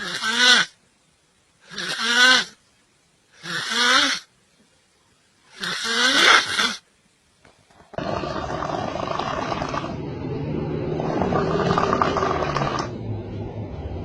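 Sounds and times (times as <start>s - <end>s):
person snoring: 7.9s - 12.9s.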